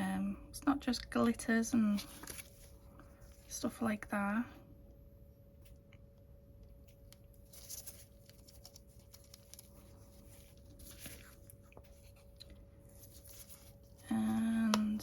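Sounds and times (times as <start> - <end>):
faint steady hum: 0.0 - 15.0
sticker sheet rustling: 7.4 - 15.0.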